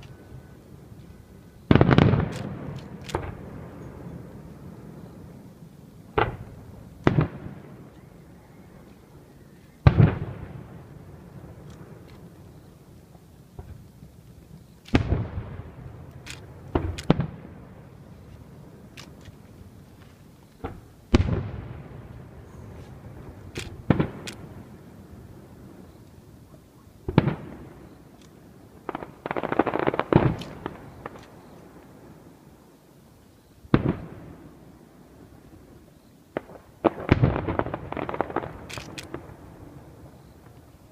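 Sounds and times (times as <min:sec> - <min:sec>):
faint fireworks crackles: 0:00.0 - 0:40.9
small crackling pops: 0:38.0 - 0:39.3.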